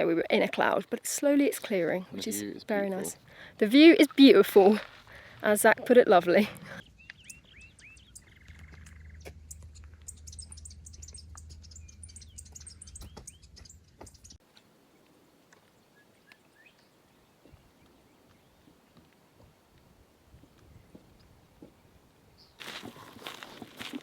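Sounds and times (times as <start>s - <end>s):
wild birds chirping: 0.0s - 19.0s, 22.3s - 24.0s
low rumble: 6.8s - 14.4s.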